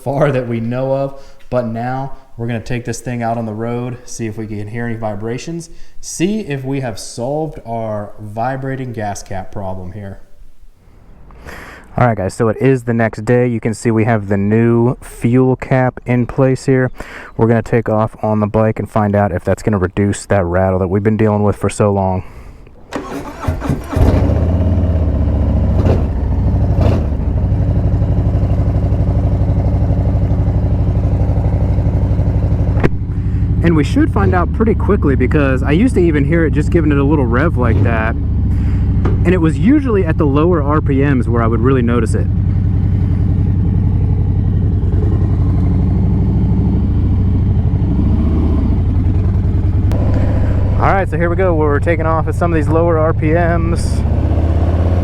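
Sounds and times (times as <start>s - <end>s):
motorcycle engine idling: 23.0s - 55.0s.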